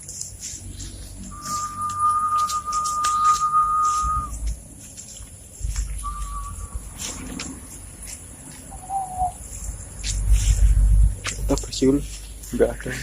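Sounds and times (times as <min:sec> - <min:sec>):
person whistling: 0:01.3 - 0:04.4, 0:06.0 - 0:06.8, 0:08.7 - 0:09.4
low rumble: 0:09.4 - 0:11.6.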